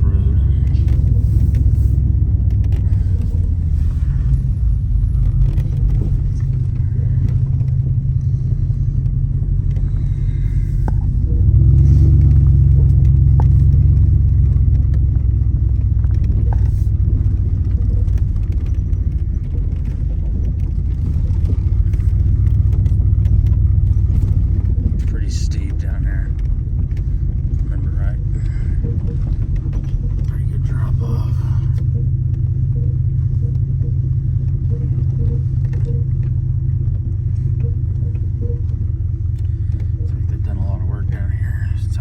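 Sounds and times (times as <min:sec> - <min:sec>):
car driving rumble: 0:00.0 - 0:42.0.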